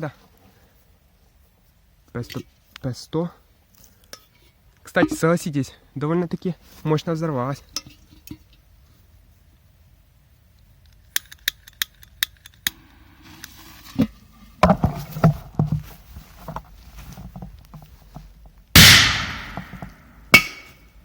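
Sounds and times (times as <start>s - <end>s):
knocks and shuffling: 3.7s - 9.5s, 13.2s - 21.0s
firecracker blast: 18.8s - 19.9s.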